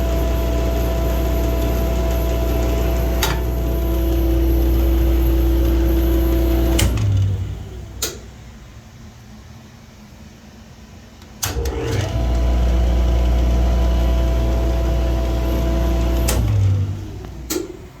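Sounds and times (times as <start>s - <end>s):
jointer motor humming: 0.0s - 8.0s, 11.5s - 17.8s.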